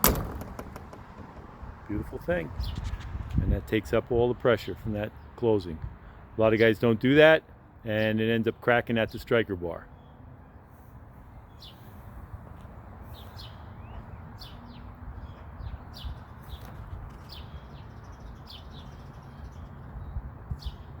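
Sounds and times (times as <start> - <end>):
small birds chirping: 1.8 - 3.2, 9.8 - 21.0.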